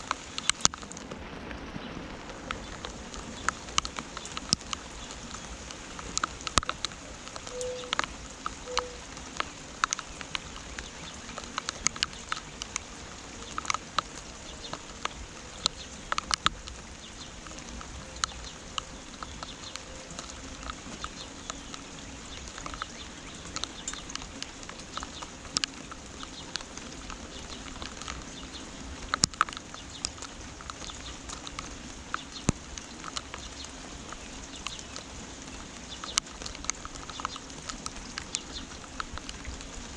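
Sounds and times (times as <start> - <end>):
raindrops pattering: 0.0 - 39.9
steady rain hiss: 0.0 - 39.9
bird calling faintly: 7.4 - 9.1.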